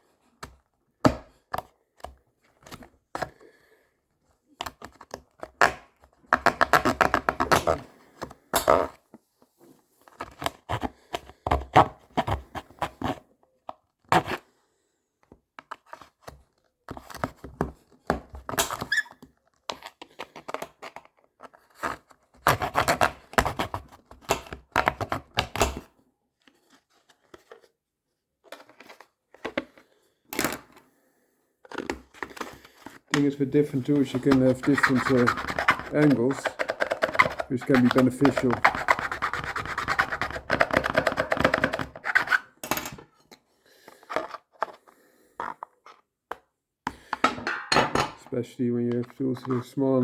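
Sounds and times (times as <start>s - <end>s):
blade scraping plastic case: 4.6s - 9.0s, 31.6s - 42.6s, 48.9s - 49.9s.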